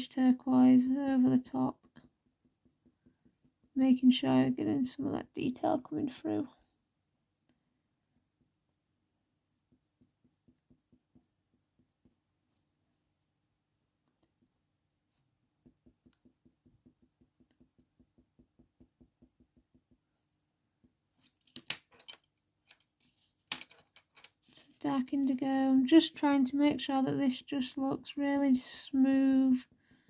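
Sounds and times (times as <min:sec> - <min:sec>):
pencil scratching on paper: 0:01.2 - 0:04.2, 0:09.4 - 0:21.6.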